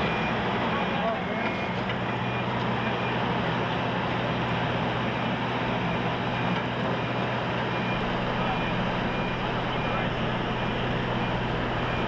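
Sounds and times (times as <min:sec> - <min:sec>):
truck engine droning: 0:02.1 - 0:12.0
steady hum: 0:07.9 - 0:12.0.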